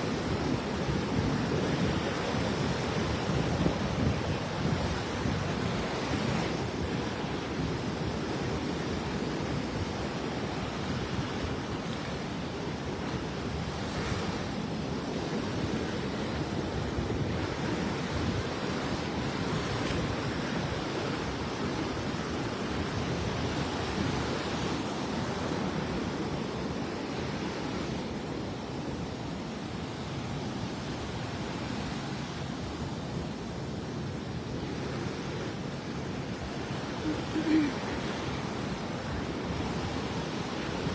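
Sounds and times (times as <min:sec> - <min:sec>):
wind blowing on microphone: 0:00.0 - 0:12.5.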